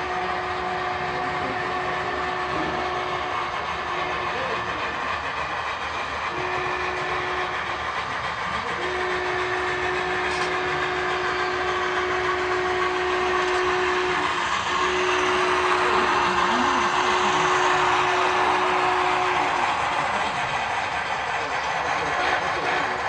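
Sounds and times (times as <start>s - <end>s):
model train horn blasts: 0.0s - 4.3s, 6.3s - 7.8s, 8.7s - 21.0s
model train running rumble: 0.0s - 23.0s.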